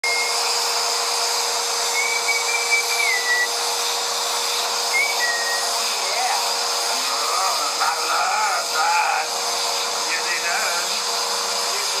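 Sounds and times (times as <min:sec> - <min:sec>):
thin high whistle: 0:00.0 - 0:00.5, 0:01.9 - 0:03.6, 0:04.9 - 0:05.7
vacuum cleaner running: 0:00.0 - 0:12.0.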